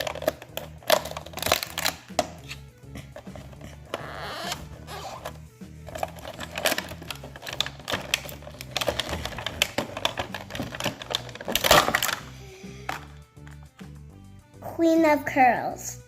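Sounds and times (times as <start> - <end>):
packaging wrapper tearing: 0.0 - 2.7, 3.9 - 12.3.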